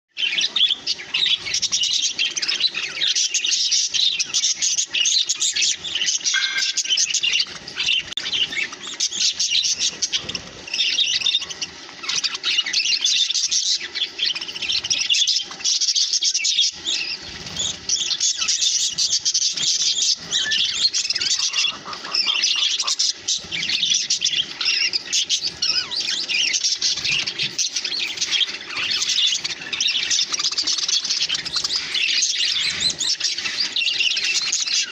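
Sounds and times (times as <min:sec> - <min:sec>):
budgerigars chirping and chattering: 0:00.2 - 0:34.9.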